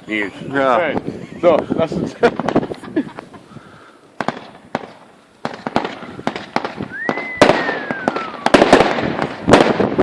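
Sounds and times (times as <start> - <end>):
firework bangs and crackles: 0.7 - 10.0
firework whistle: 6.7 - 9.2.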